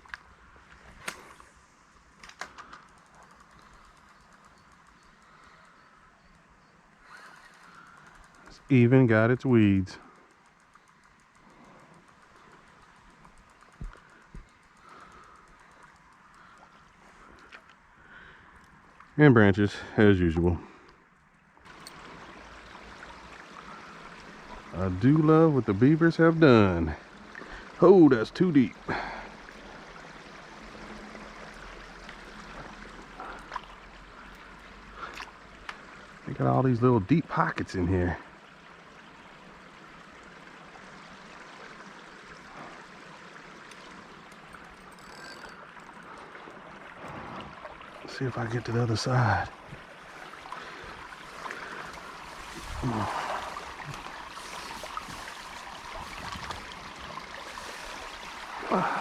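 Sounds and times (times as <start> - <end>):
creek water running: 0.0 - 59.0
stream trickling: 0.0 - 59.0
water sloshing around wading legs: 29.0 - 36.0, 49.3 - 59.0.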